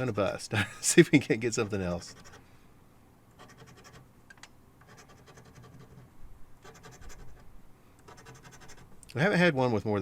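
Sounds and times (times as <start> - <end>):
faint scratching of lottery ticket: 1.0 - 2.6, 3.3 - 4.1, 4.8 - 9.0.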